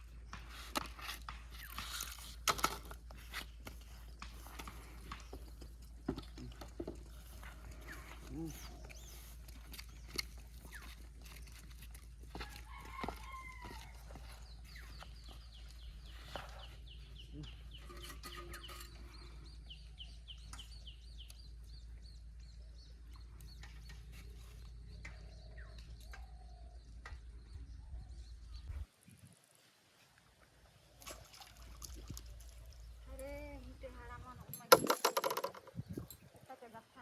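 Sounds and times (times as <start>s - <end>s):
rooster crowing: 12.4s - 14.1s.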